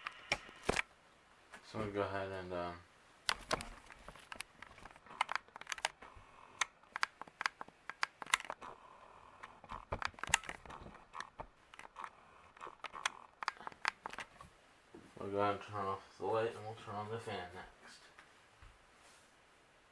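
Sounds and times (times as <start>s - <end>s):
sharp clicks and crackles: 0.0s - 0.9s, 3.3s - 14.5s.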